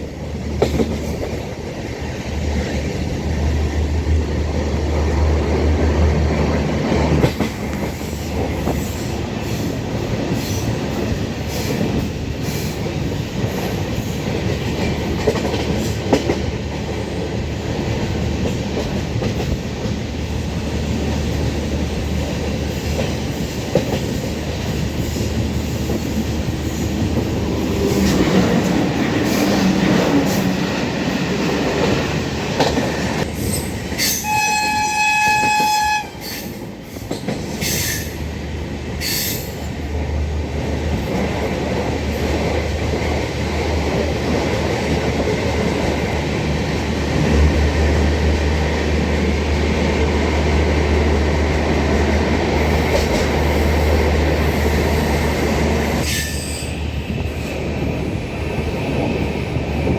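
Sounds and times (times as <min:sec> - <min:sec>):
train wheels clickety-clack: 0:00.0 - 0:59.9
train horn: 0:34.0 - 0:36.5.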